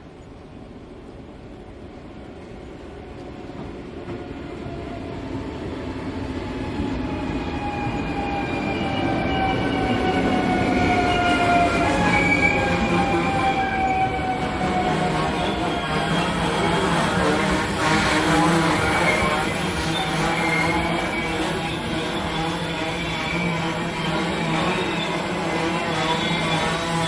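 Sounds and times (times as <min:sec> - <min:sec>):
train wheels rumbling on rail: 0:00.0 - 0:27.0
train brakes squealing: 0:07.5 - 0:17.7, 0:18.4 - 0:27.0.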